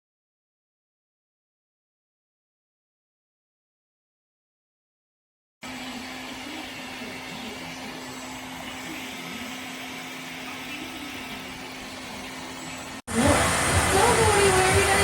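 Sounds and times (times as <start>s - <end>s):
hair dryer blowing: 5.6s - 15.0s
low motor hum: 5.7s - 15.0s.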